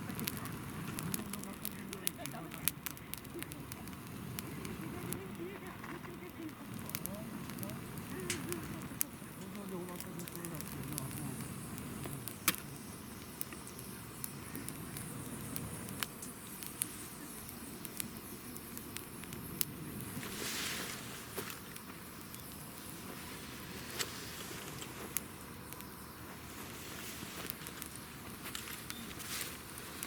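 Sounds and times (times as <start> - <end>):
low rumble of flames: 0.0 - 30.0
wood crackling and popping: 0.0 - 30.0
brief hiss: 20.0 - 21.8, 23.2 - 25.2.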